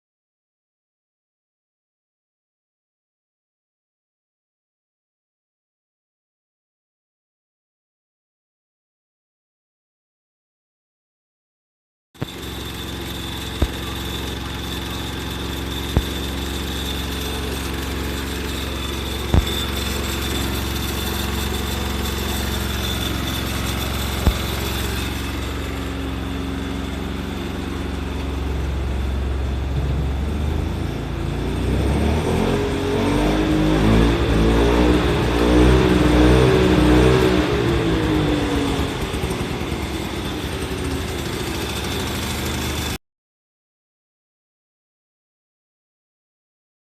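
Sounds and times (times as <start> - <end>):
car engine idling and revving: 12.2 - 43.0.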